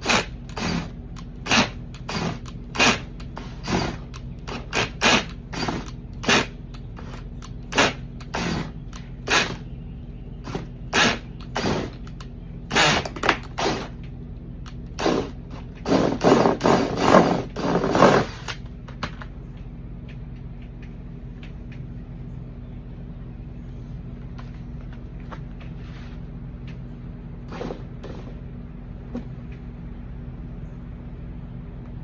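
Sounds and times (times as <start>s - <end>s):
hand tool ratcheting and scraping: 0.0s - 9.6s, 10.4s - 14.0s
steady low hum: 0.0s - 32.0s.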